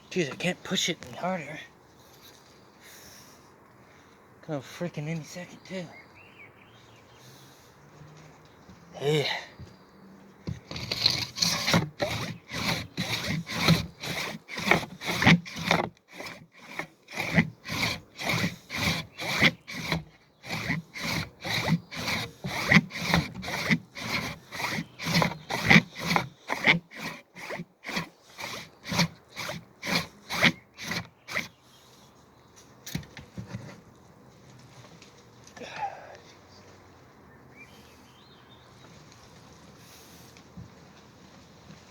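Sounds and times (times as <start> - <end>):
handsaw cutting through wood: 10.5 - 31.6.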